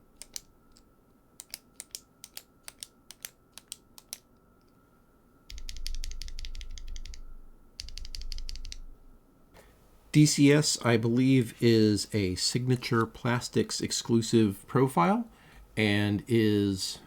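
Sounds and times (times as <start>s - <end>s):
ballpoint pen clicking: 1.4s - 4.3s.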